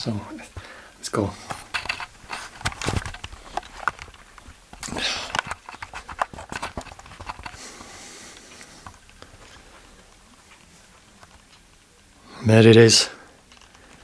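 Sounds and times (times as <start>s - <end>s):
footsteps: 1.3s - 11.4s.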